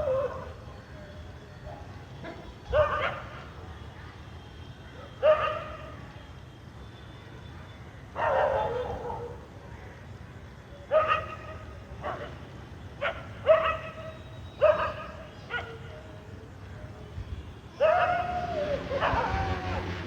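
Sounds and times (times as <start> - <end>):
distant city hum: 0.0 - 20.0
dog barking: 2.3 - 3.4, 5.2 - 5.9, 8.2 - 9.4, 10.9 - 12.4, 13.0 - 15.9.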